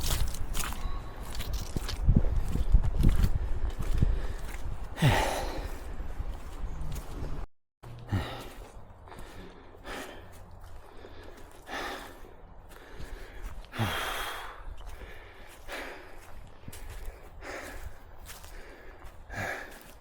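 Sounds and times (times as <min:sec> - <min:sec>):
person breathing hard: 0:03.3 - 0:06.4, 0:08.0 - 0:20.0.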